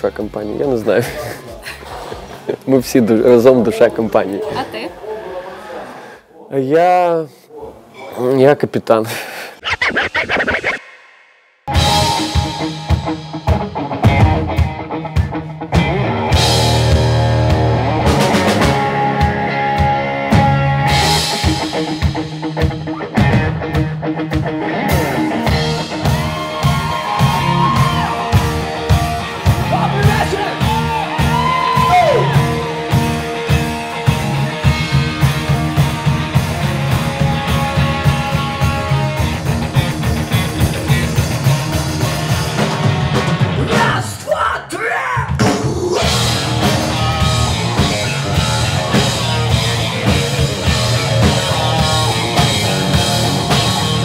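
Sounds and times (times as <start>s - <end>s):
rock drum beat: 11.7s - 44.1s, 45.2s - 54.0s
guitar: 11.7s - 44.3s, 45.2s - 54.0s.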